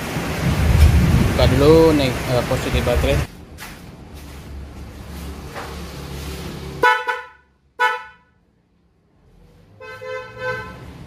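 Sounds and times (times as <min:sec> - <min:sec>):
car horn honking: 0:06.8 - 0:08.4, 0:09.8 - 0:11.0.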